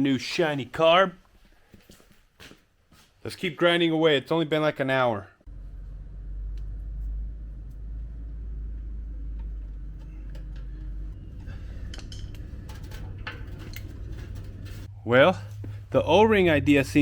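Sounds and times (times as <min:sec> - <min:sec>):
steady low hum: 0:05.5 - 0:17.0.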